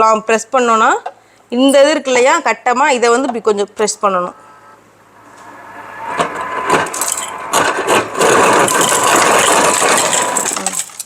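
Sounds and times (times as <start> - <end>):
ice crusher motor grinding: 6.9 - 11.0
ice chips rattling into a glass: 8.3 - 11.0.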